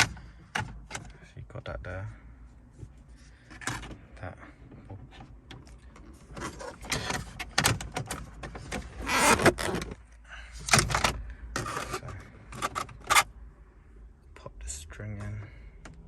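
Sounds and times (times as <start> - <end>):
plastic scraping: 6.3 - 10.0, 11.6 - 13.2
plastic parts clicking and rattling: 10.6 - 13.3.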